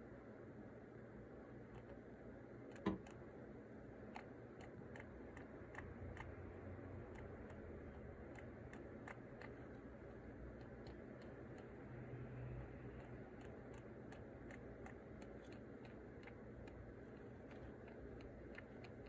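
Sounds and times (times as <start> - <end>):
hamster squeaking: 7.1 - 11.8, 12.8 - 19.0.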